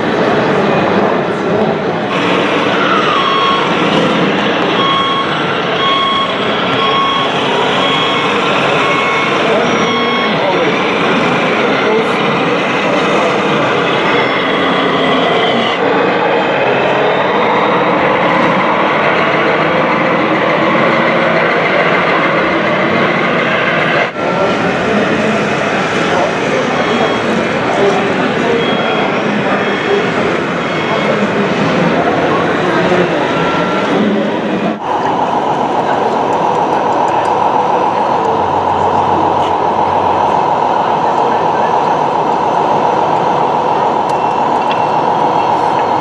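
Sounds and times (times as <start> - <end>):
truck engine: 0.0 - 46.0
reversing beeper: 1.5 - 46.0.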